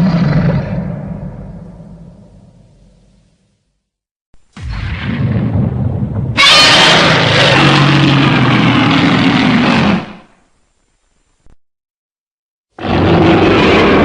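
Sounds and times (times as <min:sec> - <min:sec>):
low rumbling blast: 0:00.0 - 0:03.3, 0:04.4 - 0:10.3, 0:12.8 - 0:14.0
dense rushing noise: 0:04.6 - 0:10.3
low drone: 0:04.6 - 0:10.4.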